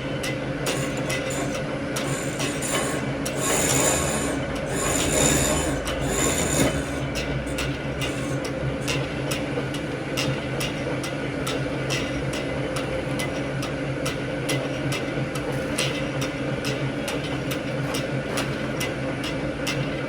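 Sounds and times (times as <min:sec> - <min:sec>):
lathe motor hum: 0:00.0 - 0:10.1
tool scraping metal: 0:00.6 - 0:08.5.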